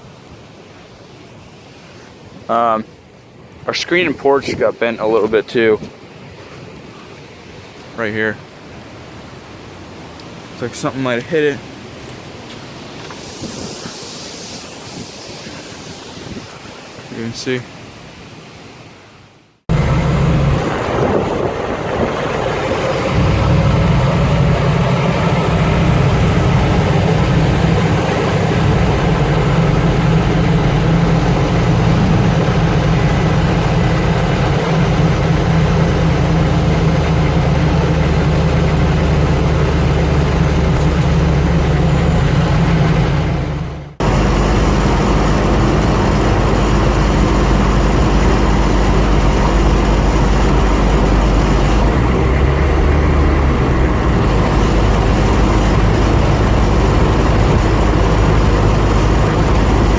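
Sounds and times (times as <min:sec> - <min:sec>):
diesel engine running: 0:19.7 - 0:59.9.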